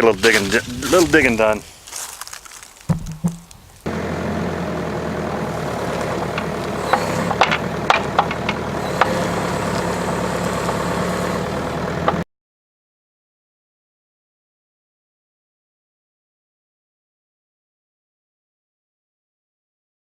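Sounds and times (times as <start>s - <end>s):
digging machine engine running: 3.0s - 12.3s
sharp metallic clanks: 6.1s - 9.8s.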